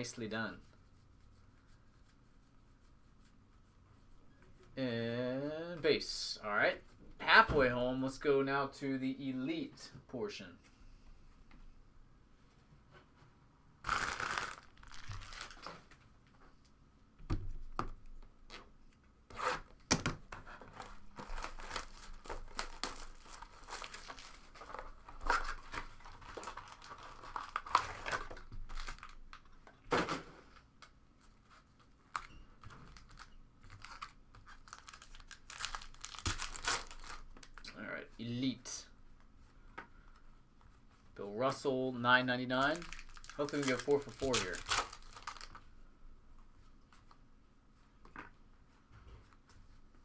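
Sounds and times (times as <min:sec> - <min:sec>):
plastic tearing: 0:13.8 - 0:15.8, 0:21.2 - 0:29.4, 0:32.9 - 0:37.7, 0:42.6 - 0:45.6
plastic wrapping rustling: 0:13.8 - 0:16.0, 0:20.5 - 0:29.6, 0:31.4 - 0:37.7, 0:42.6 - 0:45.7.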